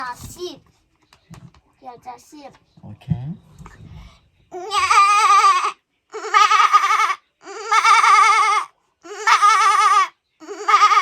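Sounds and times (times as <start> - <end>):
goat bleating: 4.6 - 11.0.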